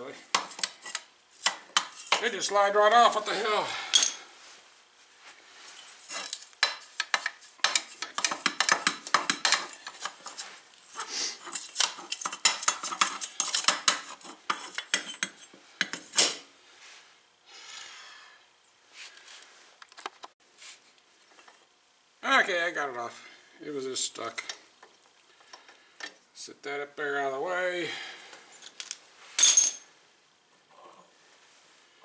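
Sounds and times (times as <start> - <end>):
metal clinks and scrapes: 0.4 - 2.4, 5.6 - 15.5, 28.6 - 29.9.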